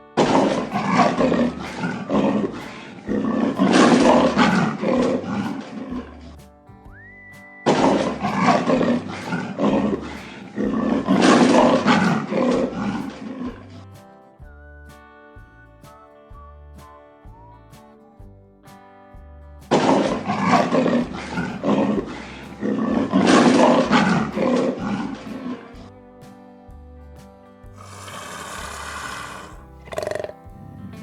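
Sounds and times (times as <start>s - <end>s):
lion roaring and grunting: 0.2s - 6.4s, 7.7s - 13.9s, 19.8s - 25.9s, 27.8s - 31.0s.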